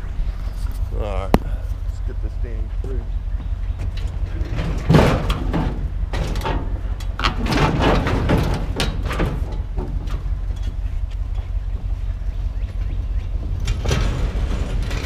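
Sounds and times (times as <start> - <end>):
steady low rumble: 0.0 - 15.0
scrap metal scraping and clattering: 4.0 - 10.8, 13.5 - 15.0.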